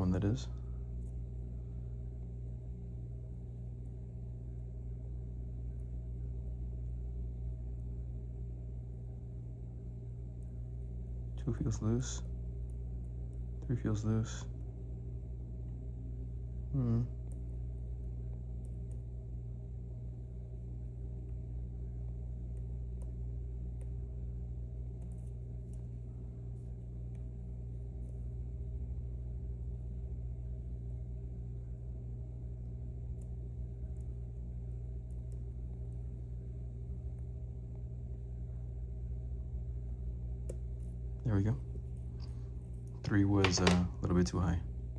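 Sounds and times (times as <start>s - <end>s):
steady low hum: 0.0s - 44.9s.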